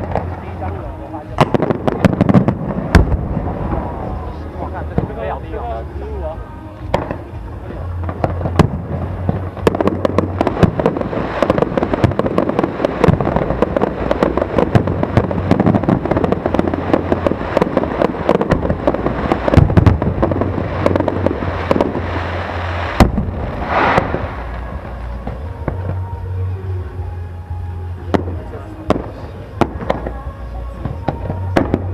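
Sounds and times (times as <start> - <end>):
firework bang: 0.0 - 5.3, 6.9 - 26.2, 30.8 - 31.9
fireworks crackling: 0.0 - 31.9
brief hiss: 22.8 - 24.6.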